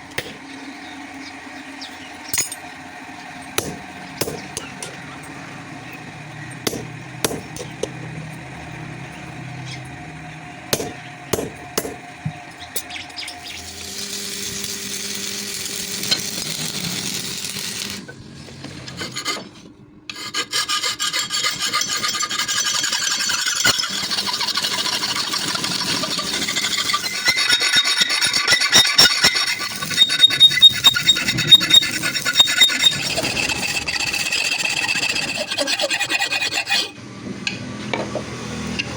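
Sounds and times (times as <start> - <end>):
hand tool rasping on steel: 18.9 - 37.0.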